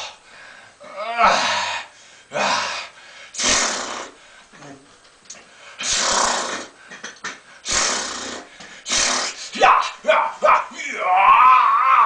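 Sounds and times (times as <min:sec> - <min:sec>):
man breathing heavily: 0:00.0 - 0:04.6, 0:05.4 - 0:09.6.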